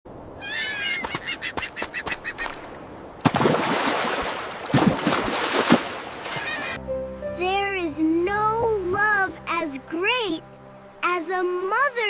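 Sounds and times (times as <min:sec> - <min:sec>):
small bird calling: 0:00.4 - 0:02.6
rushing splashing noise: 0:02.6 - 0:06.6.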